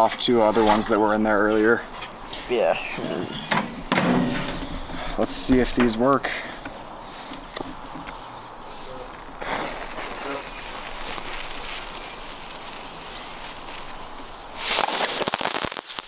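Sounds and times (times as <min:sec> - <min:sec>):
fuse hissing: 0:01.5 - 0:15.3
firework crackling burst: 0:09.4 - 0:16.0.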